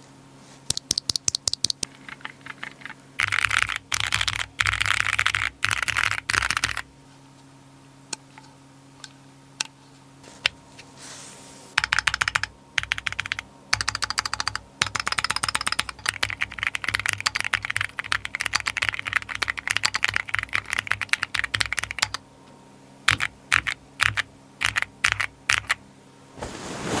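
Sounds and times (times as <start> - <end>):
mechanical keyboard typing: 0.7 - 6.9, 11.8 - 22.2, 23.1 - 25.8.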